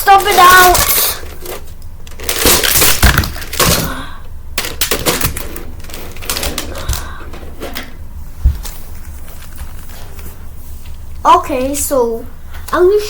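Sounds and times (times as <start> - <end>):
plastic cubes clattering: 0.0 - 4.0, 4.6 - 7.9.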